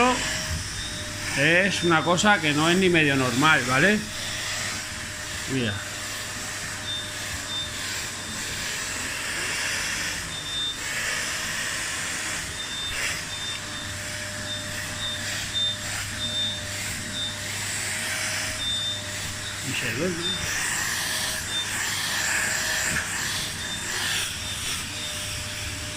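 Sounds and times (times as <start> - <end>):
faint high whistle: 0.0 - 2.0, 12.6 - 17.4
vacuum cleaner running: 0.0 - 25.9.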